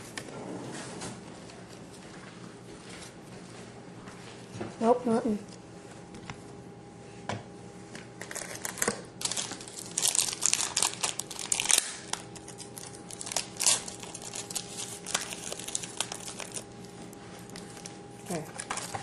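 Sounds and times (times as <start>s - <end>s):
wrapper tearing and crinkling: 8.2s - 16.7s, 18.3s - 19.0s.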